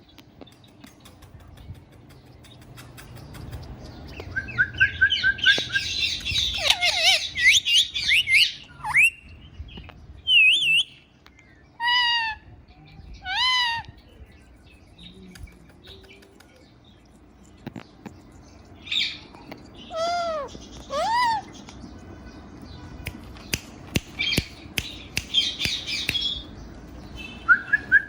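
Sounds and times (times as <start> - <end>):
parrot calling and chattering: 5.7 - 9.2, 11.8 - 12.5, 13.2 - 14.0, 19.8 - 21.8
parrot harsh screeches: 6.6 - 7.5.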